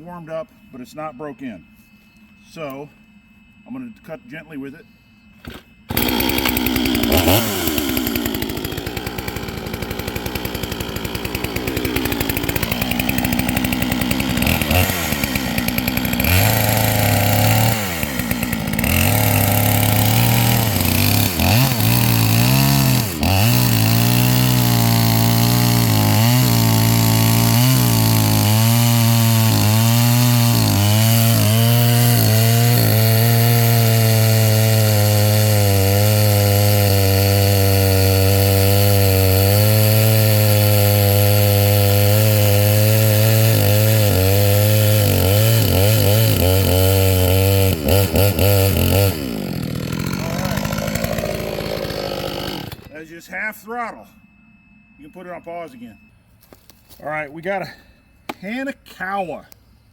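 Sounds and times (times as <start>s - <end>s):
chainsaw cutting wood: 5.4s - 53.1s.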